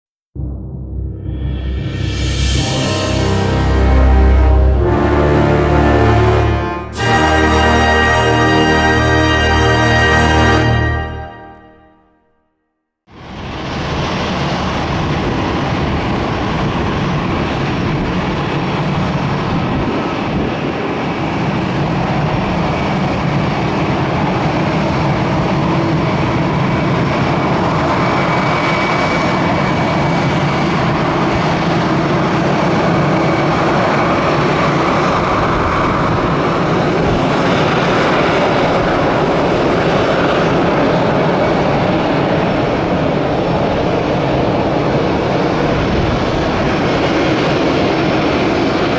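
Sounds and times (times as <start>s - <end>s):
jet engines rushing with whine: 13.1s - 48.9s.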